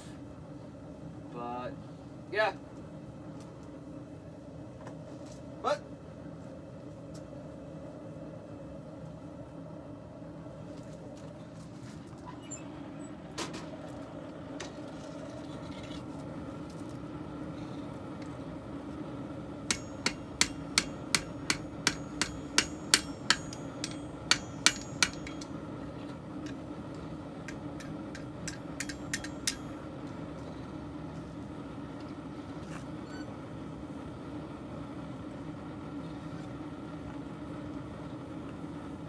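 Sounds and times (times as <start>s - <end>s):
steady hum: 19.1s - 30.4s
hammer clanging on metal blade: 19.7s - 25.6s, 26.4s - 29.9s.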